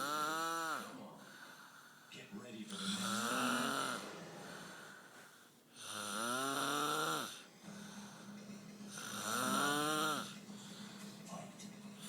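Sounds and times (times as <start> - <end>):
loud snoring: 0.0 - 1.0, 2.7 - 4.9, 5.8 - 8.2, 8.9 - 10.4.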